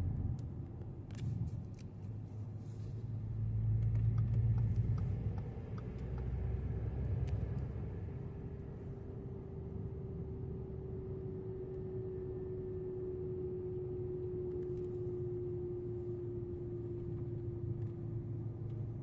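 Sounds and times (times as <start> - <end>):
road and engine rumble: 0.0 - 19.0
drivetrain whine: 3.0 - 19.0.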